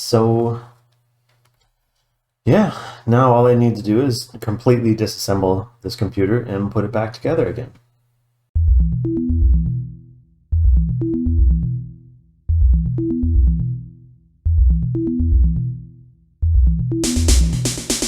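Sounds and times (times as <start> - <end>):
electronic music with bass beat: 8.6 - 18.0.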